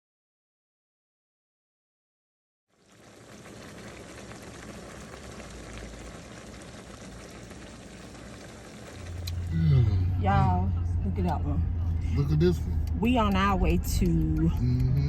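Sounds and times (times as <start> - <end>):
road and engine noise inside car: 9.1 - 15.0.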